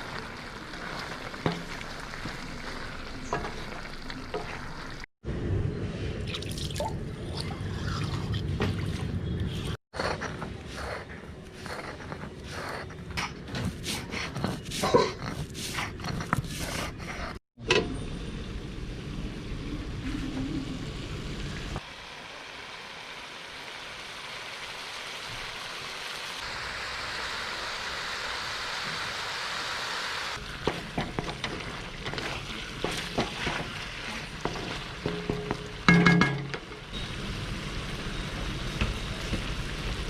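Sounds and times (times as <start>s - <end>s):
chicken sizzling in oil: 0.0s - 5.1s, 21.6s - 40.0s
spatula clattering and scraping: 10.0s - 17.4s, 30.6s - 36.8s.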